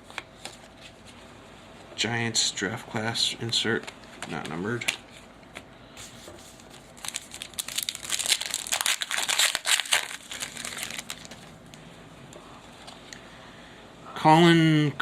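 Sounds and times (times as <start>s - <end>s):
wrapper crinkling: 6.5s - 11.8s.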